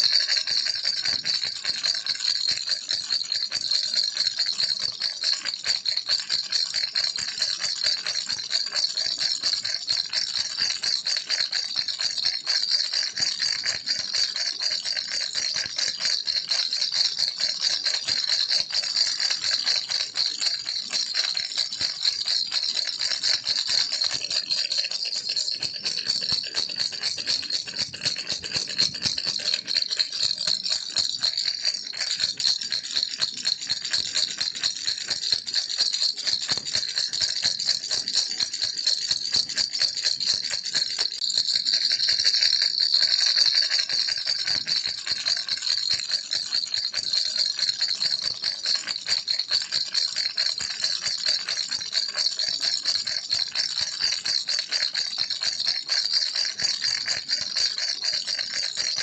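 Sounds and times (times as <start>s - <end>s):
toy rattle shaking: 0.0s - 59.0s.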